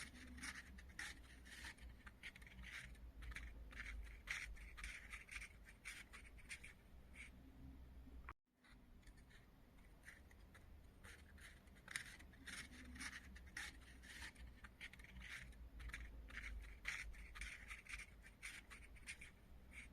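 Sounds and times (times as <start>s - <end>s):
scratching and scraping: 0.0s - 7.4s, 8.6s - 19.9s
low steady hum: 5.9s - 19.9s.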